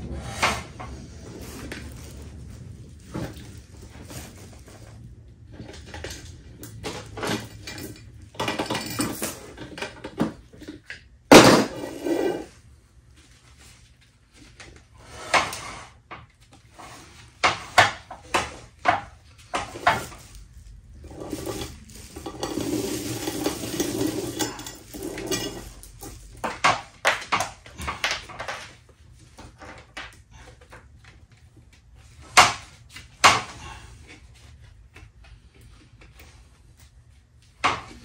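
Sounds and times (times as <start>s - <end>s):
chainsaw chain clinking and rattling: 6.8s - 9.7s, 21.0s - 26.4s.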